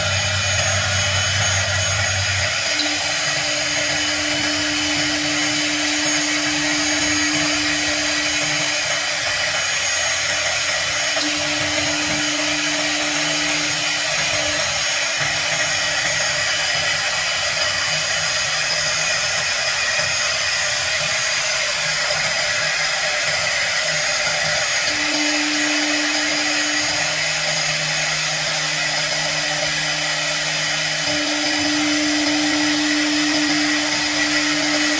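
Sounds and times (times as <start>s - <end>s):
low motor hum: 0.0s - 9.0s, 11.1s - 14.8s, 24.9s - 34.9s
router spindle cutting plastic: 0.0s - 34.9s.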